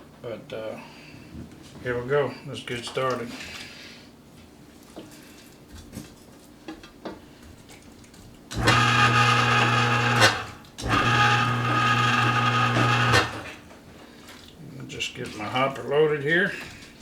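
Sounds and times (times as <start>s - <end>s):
meat grinder humming: 8.5s - 13.8s.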